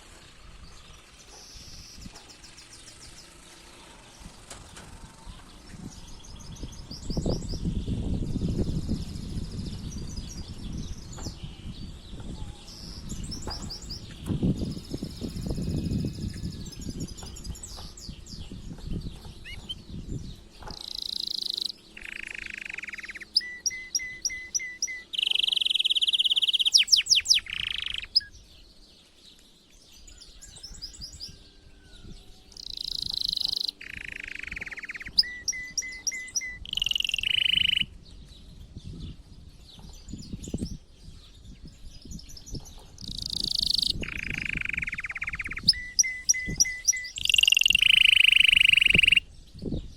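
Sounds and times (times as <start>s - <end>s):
canary singing trills: 0.0s - 49.9s.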